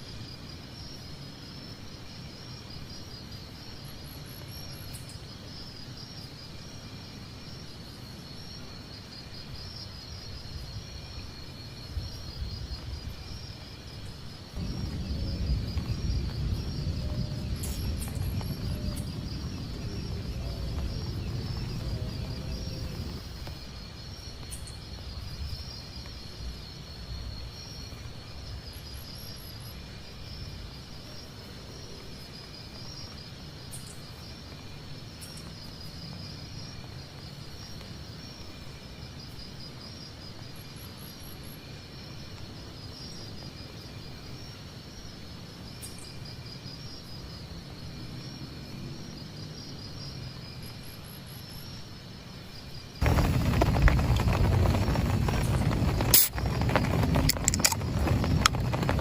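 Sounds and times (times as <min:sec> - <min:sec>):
insects chirping: 0:00.0 - 0:59.0
rain hiss: 0:00.0 - 0:59.0
low rumble: 0:14.6 - 0:23.6, 0:53.0 - 0:59.0.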